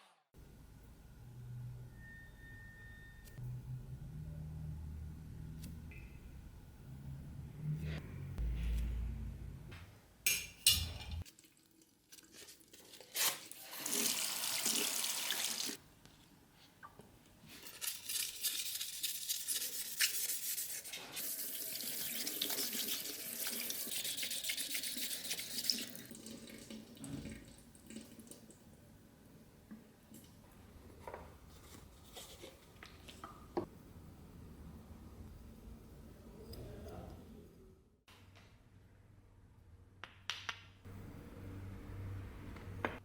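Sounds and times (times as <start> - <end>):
water running from tap into sink: 13.8 - 15.8, 21.2 - 28.5.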